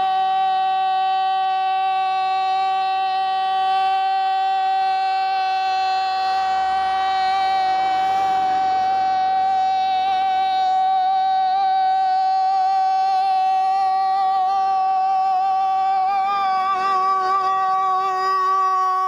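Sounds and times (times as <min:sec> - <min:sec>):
person holding long high note: 0:00.0 - 0:19.0.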